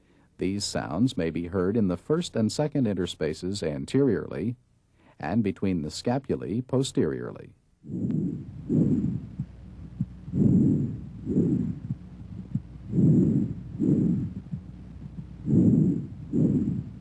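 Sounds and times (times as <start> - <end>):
breath sounds through stethoscope: 4.9 - 5.2, 7.8 - 17.0.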